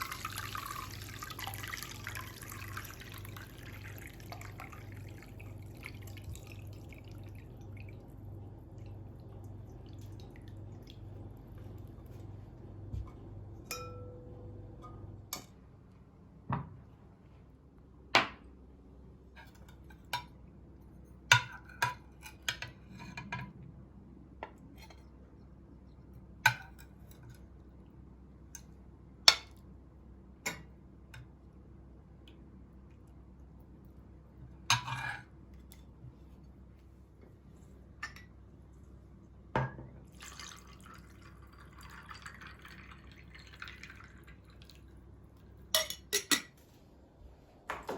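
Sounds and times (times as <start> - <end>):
liquid pouring: 0.0 - 12.2, 40.1 - 46.1
dishes and utensils clinking: 13.6 - 15.6, 34.7 - 35.3, 45.8 - 46.6.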